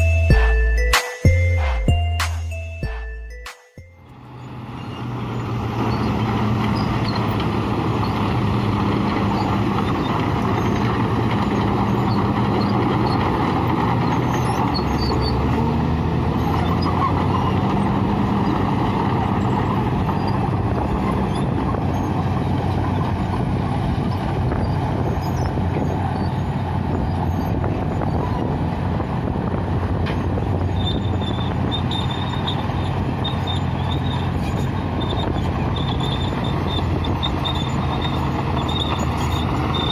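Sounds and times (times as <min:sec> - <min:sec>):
bulldozer diesel engine: 0:00.0 - 0:39.9
high stuttering squeal: 0:04.1 - 0:23.4, 0:30.6 - 0:39.9.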